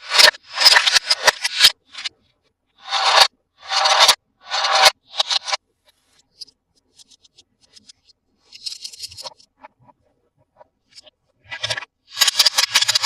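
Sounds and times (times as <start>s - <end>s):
plastic toy parts clicking: 8.5s - 9.3s.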